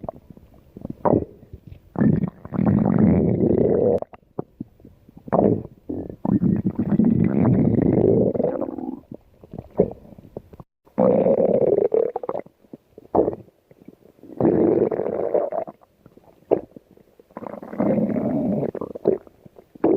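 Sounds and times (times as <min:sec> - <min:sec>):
stomach growling: 0:00.0 - 0:19.9.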